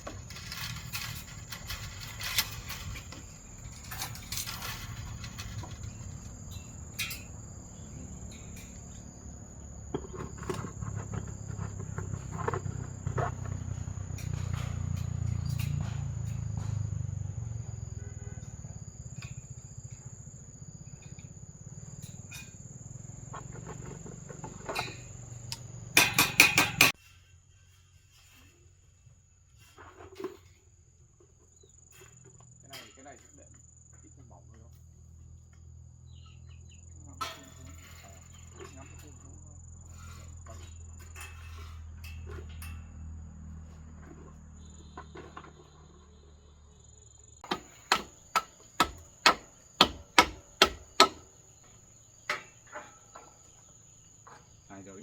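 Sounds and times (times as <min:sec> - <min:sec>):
crickets trilling: 0:00.0 - 0:55.0
knocks on timber frame: 0:47.4 - 0:51.3.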